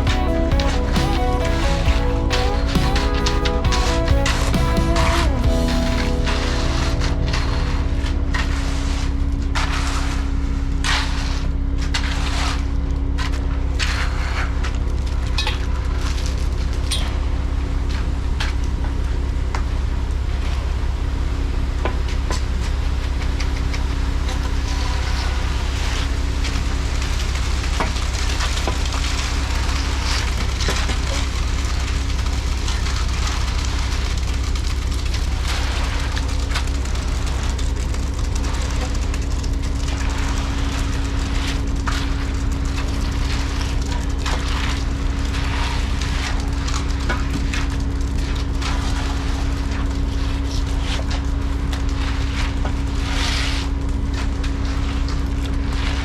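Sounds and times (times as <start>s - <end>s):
scrapes and crackles: 23.4s - 56.0s.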